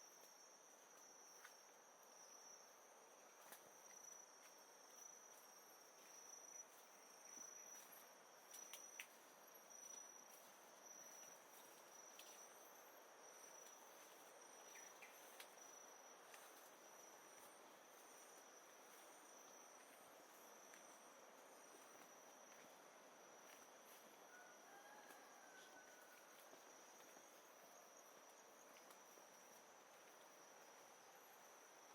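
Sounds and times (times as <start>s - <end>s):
high-pitched insect trill: 0.0s - 31.9s.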